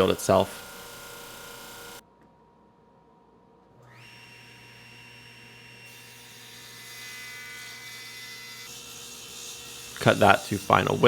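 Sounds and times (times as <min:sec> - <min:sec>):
power tool motor whining: 0:00.0 - 0:02.0, 0:07.2 - 0:11.0.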